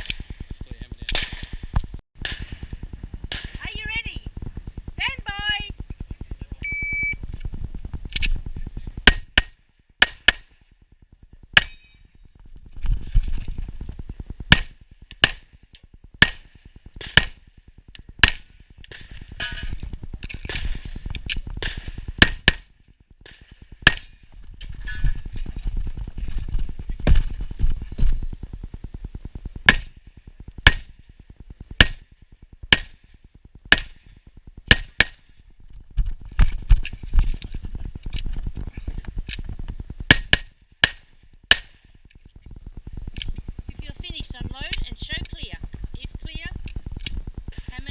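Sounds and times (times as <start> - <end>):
pistol shots: 16.2 - 17.4, 40.1 - 41.8.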